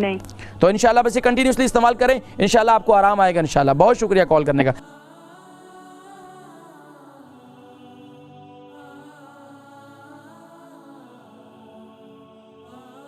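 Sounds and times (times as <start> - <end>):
wavering sung vocal: 3.5 - 13.0.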